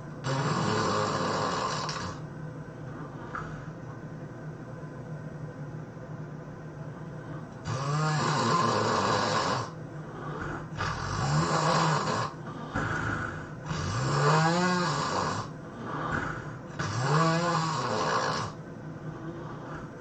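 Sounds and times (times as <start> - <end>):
quiet breaths: 0.0 - 4.0, 6.8 - 20.0
person snoring heavily: 0.2 - 2.2, 7.6 - 18.6.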